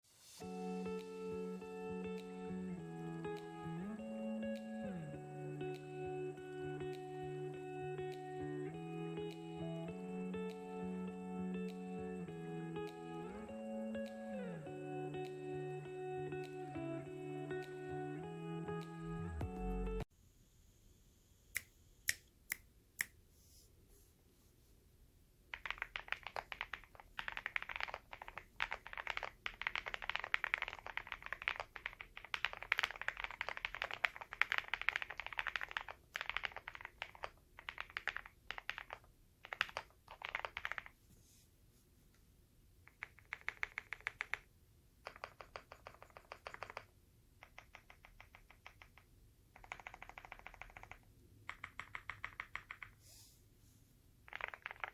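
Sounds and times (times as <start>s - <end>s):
typing on mechanical keyboard: 25.5s - 41.0s, 42.9s - 53.0s, 54.2s - 54.9s.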